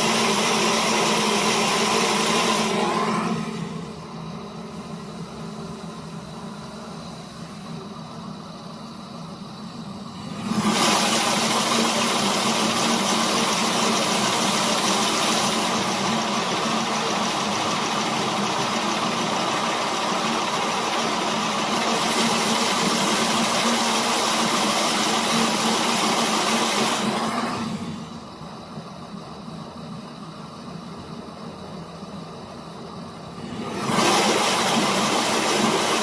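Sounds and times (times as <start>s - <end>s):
loud machine noise: 0.0s - 8.1s, 9.6s - 28.6s, 33.3s - 36.0s.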